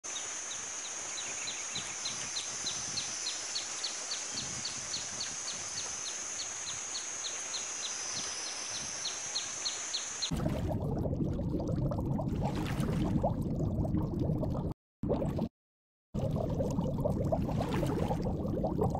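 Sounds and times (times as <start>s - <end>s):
high-pitched insect drone: 0.2s - 10.2s.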